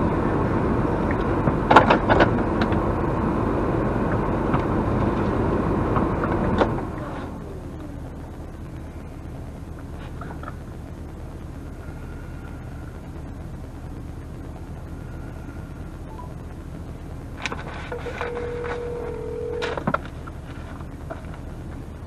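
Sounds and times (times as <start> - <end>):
low mechanical hum: 0.0 - 22.0
short steady tone: 17.9 - 19.8.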